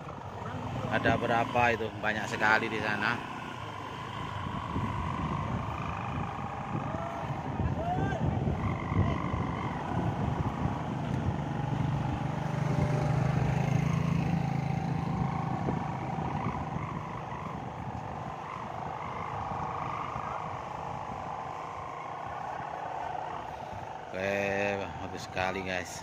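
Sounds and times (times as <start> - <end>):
kite hummers droning: 0.0 - 26.0
low hum: 0.0 - 26.0.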